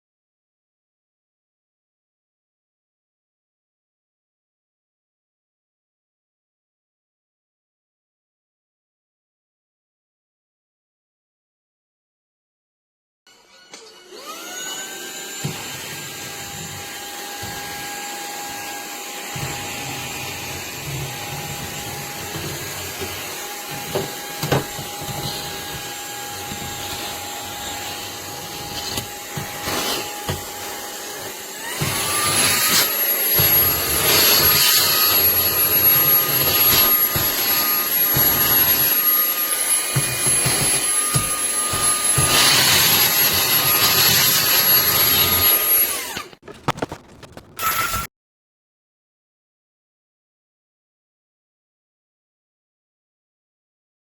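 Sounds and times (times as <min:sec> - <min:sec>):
handheld vacuum motor whine: 0:13.3 - 0:46.4.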